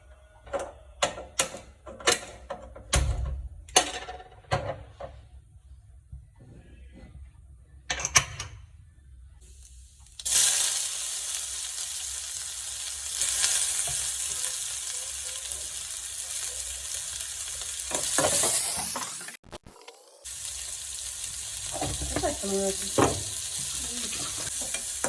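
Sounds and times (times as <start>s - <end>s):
sizzling frying in oil: 9.4s - 25.0s.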